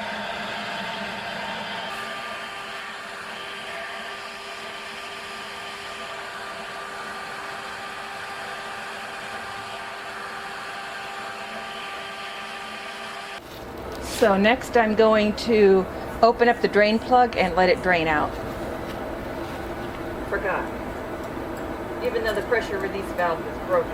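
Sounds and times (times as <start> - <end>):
shop vacuum motor whining: 0.0 - 14.4.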